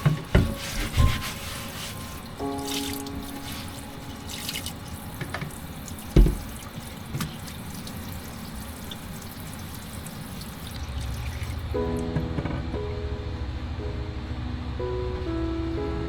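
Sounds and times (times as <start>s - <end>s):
water splashing: 0.0s - 11.7s.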